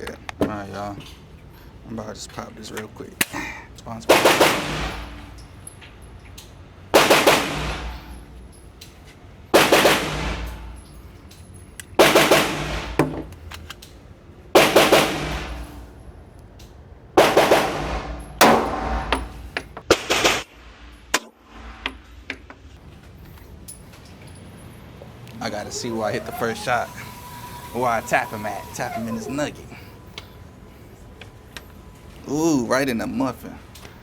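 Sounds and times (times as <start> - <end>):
pistol shots echoing indoors: 4.1 - 5.4, 6.9 - 8.3, 9.5 - 11.0, 12.0 - 13.1, 14.6 - 15.8, 17.2 - 20.5.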